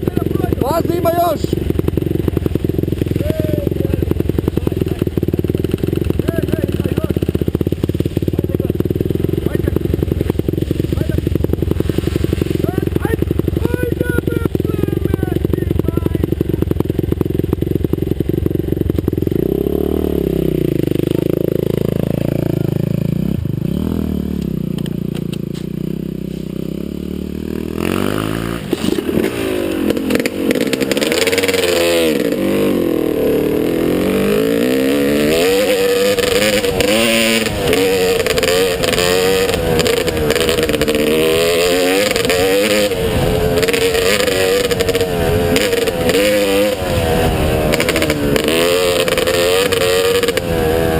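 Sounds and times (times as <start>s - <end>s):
rattling and rushing noise: 0.0s - 26.7s, 27.8s - 50.9s
motocross bike engine revving: 0.0s - 50.9s.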